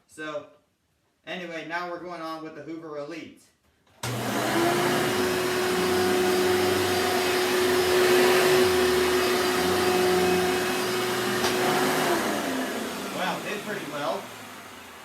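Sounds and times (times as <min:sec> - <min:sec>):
vacuum cleaner motor whine: 0:04.0 - 0:15.0.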